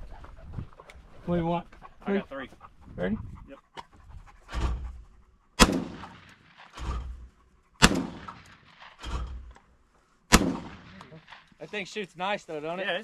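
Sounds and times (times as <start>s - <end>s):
shotgun shots: 5.6s - 7.2s, 7.8s - 9.5s, 10.3s - 11.5s.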